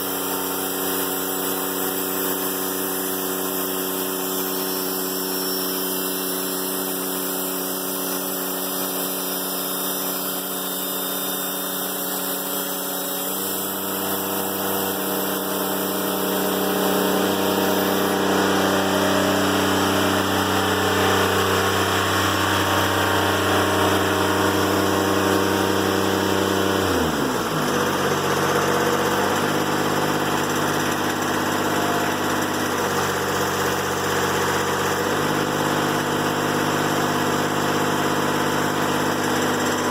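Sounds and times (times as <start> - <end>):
diesel engine running: 13.4 - 37.7.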